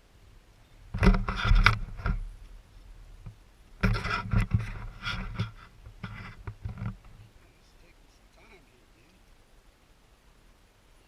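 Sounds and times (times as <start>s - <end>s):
knocking and rattling: 0.9s - 2.3s, 3.2s - 7.2s.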